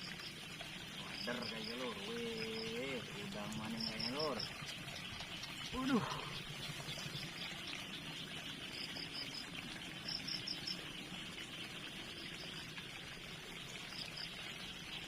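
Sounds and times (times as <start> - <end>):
insects chirping: 0.0 - 14.4.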